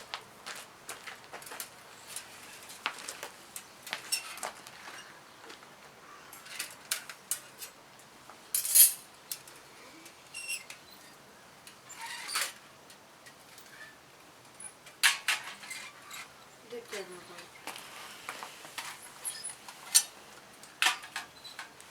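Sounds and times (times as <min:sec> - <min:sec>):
metal parts clicking and clinking: 0:08.5 - 0:09.5.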